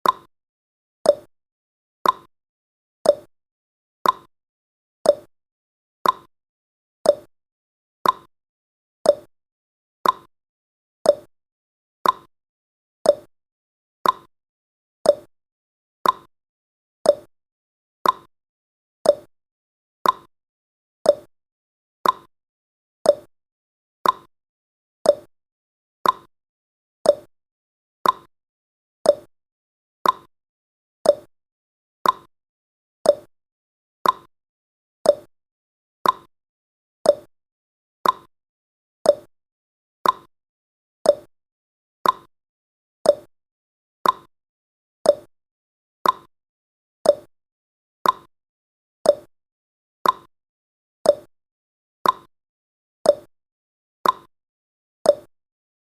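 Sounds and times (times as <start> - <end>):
clock ticking: 28.0 - 28.3, 34.0 - 34.3, 36.0 - 36.3, 38.0 - 38.3, 42.0 - 42.3, 44.0 - 44.3, 46.0 - 46.3.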